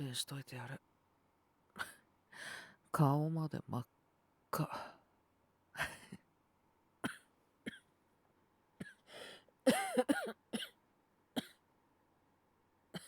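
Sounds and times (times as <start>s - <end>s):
man coughing: 8.8s - 9.1s, 9.7s - 10.8s.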